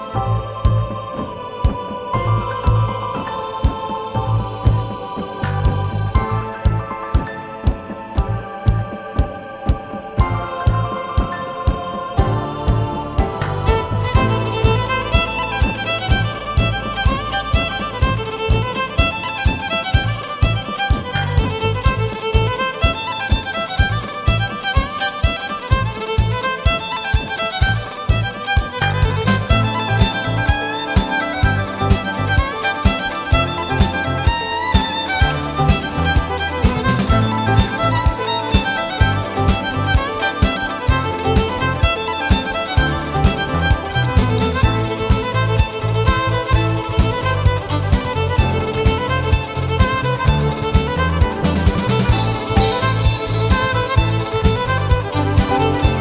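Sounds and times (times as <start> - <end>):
bowed string melody: 0.0 - 7.2, 8.0 - 56.0
quick steady drum beat: 2.6 - 56.0.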